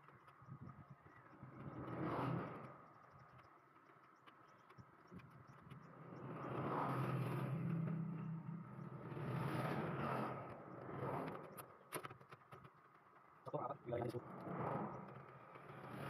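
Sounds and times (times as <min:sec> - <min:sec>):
motor vehicles passing: 0:01.4 - 0:03.4, 0:04.7 - 0:11.8, 0:13.5 - 0:16.0.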